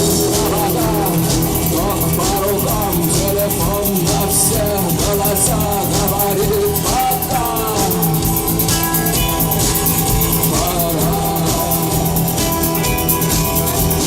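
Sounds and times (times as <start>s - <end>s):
drum kit steady beat: 0.0s - 14.0s
live rock band playing: 0.0s - 14.0s.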